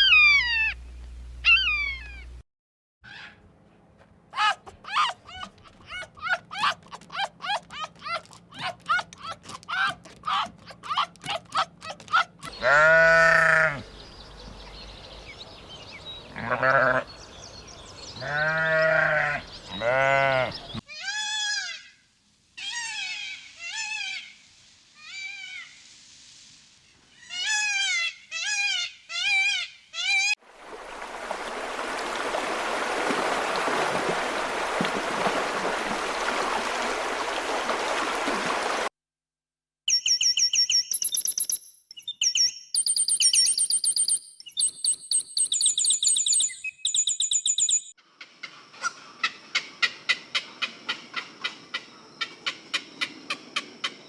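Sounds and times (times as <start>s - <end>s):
farm animal bleating: 12.5s - 13.9s, 16.3s - 17.1s, 18.2s - 21.7s
steady hiss: 23.4s - 26.9s.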